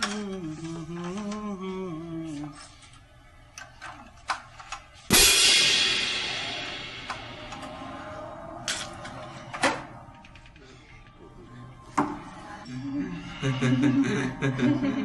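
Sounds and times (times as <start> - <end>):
cymbal-like crash: 5.1 - 8.8.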